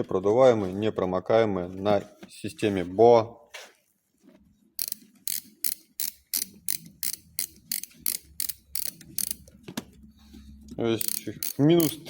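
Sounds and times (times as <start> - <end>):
lacing dial ratchet clicking: 4.8 - 9.6, 11.0 - 12.0.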